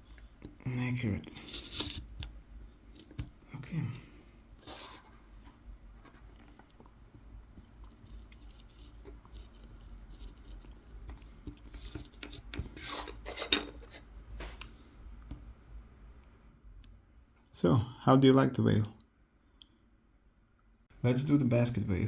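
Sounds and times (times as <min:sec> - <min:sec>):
knife scratching wood: 0:01.4 - 0:02.2, 0:07.7 - 0:10.9, 0:11.6 - 0:14.1.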